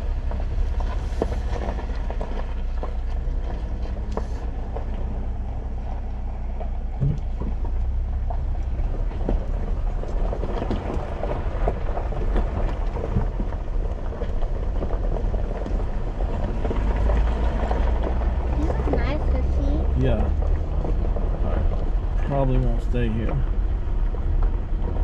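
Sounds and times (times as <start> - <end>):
low road rumble in vehicle: 0.0 - 25.0
rattles and knocks: 0.1 - 22.6.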